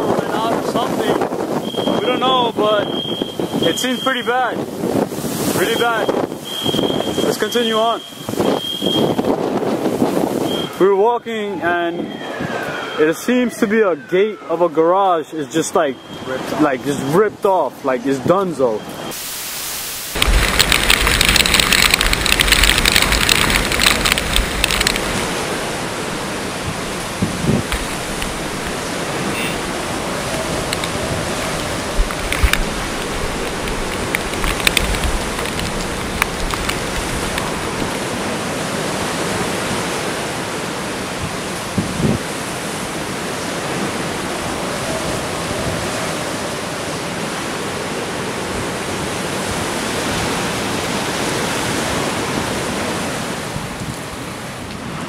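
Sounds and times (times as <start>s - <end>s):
roar of wind and water: 0.0s - 55.0s.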